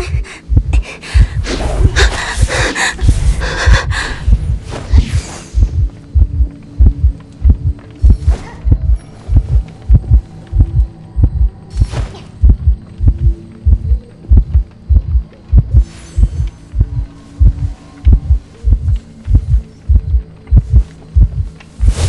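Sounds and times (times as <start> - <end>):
low double thumping: 5.6 - 11.8, 12.4 - 15.9.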